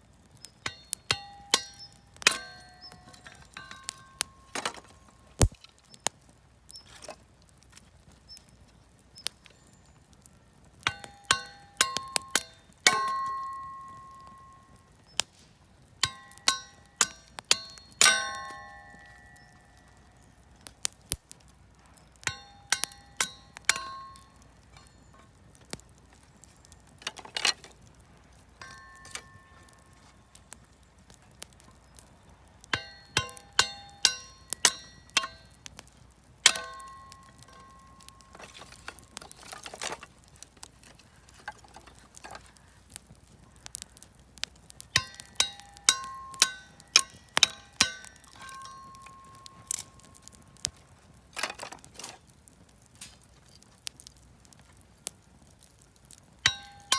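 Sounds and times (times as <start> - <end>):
sharp metallic clinks: 0.6 - 5.6, 10.9 - 14.9, 16.0 - 20.6, 22.2 - 25.3, 28.6 - 30.2, 32.7 - 35.8, 36.4 - 40.0, 45.0 - 50.7, 56.4 - 56.9.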